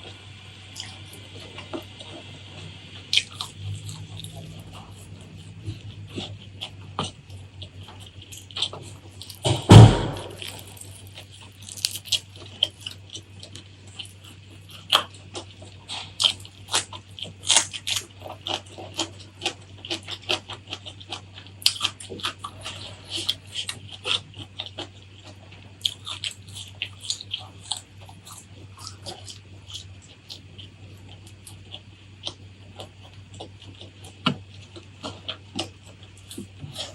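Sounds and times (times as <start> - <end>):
crunching and chewing crisp food: 0.0 - 36.9
faint low hum: 0.0 - 36.9
loud low thump: 9.5 - 10.6.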